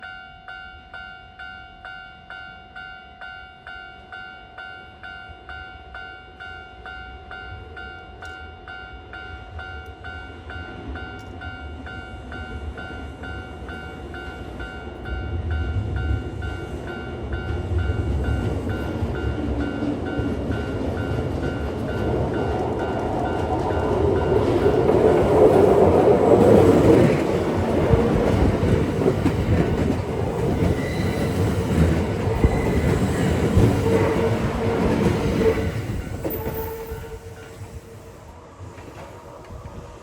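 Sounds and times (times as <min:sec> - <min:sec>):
train wheels rumbling on rails: 0:10.0 - 0:40.0.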